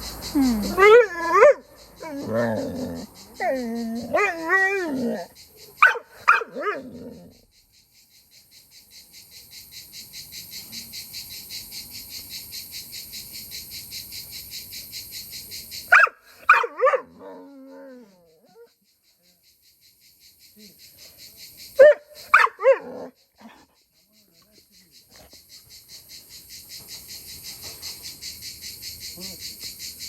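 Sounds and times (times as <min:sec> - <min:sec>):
cricket chirping: 0:00.0 - 0:30.0
dog whining and yelping: 0:00.4 - 0:07.1.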